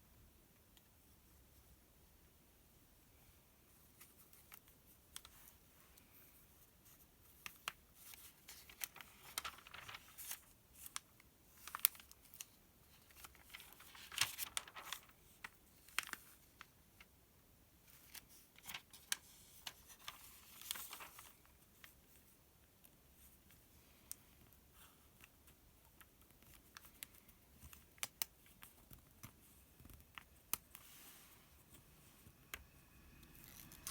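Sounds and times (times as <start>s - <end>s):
paper pages rustling: 7.5s - 16.7s, 17.9s - 22.0s.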